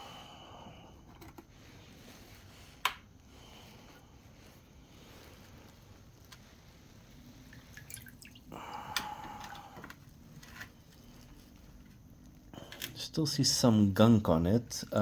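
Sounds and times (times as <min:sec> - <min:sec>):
liquid dripping off metal part: 0:07.6 - 0:09.8.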